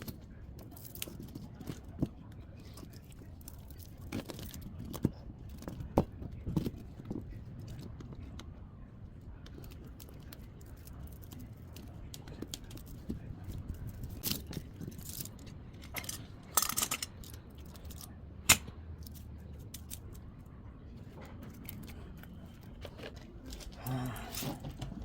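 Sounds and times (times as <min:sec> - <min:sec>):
tools and parts clinking: 0:00.0 - 0:08.4, 0:09.4 - 0:25.0.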